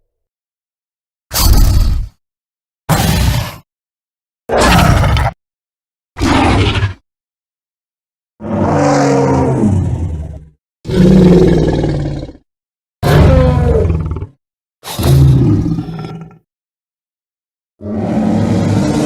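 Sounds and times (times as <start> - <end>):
monster roars: 4.5 - 5.4, 8.4 - 12.4, 13.0 - 16.4, 17.8 - 19.0.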